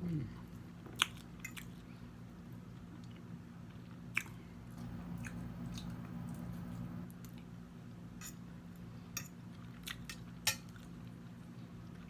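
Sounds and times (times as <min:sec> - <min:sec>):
person chewing food: 0:04.1 - 0:07.0
steady low hum: 0:04.8 - 0:07.1.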